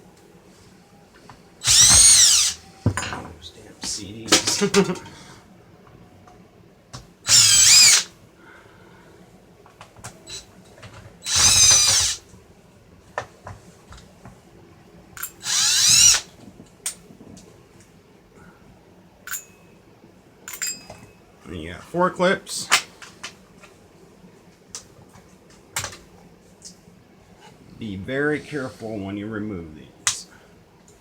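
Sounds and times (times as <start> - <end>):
electric screwdriver running: 1.6 - 2.6, 7.3 - 8.1, 11.2 - 12.2, 15.4 - 16.2.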